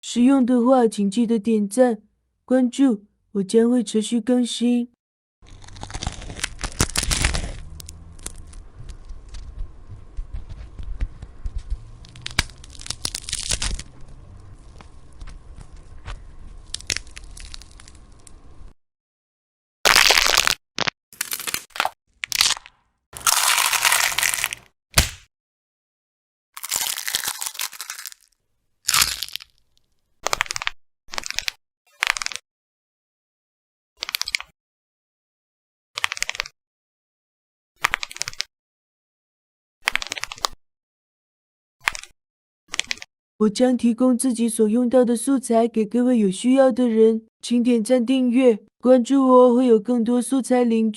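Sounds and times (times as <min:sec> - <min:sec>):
bone breaking with crackling snaps: 0:05.5 - 0:08.6, 0:12.0 - 0:13.9, 0:16.6 - 0:18.4, 0:19.9 - 0:25.2, 0:26.6 - 0:32.4, 0:37.8 - 0:38.5, 0:39.8 - 0:40.6.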